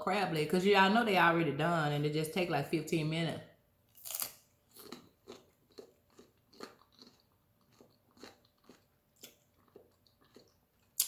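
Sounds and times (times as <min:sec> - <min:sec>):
person chewing crunchy chips: 0:03.9 - 0:11.0.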